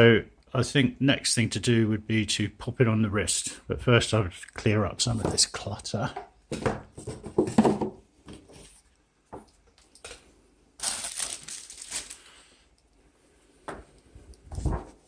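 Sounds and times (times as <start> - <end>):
packaging crinkling and crushing: 10.8 - 12.3.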